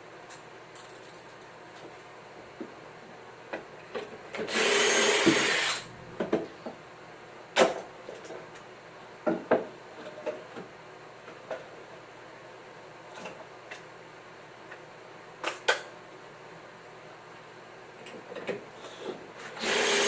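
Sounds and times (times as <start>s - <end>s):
power tool cutting wood: 4.5s - 5.9s, 19.6s - 20.0s.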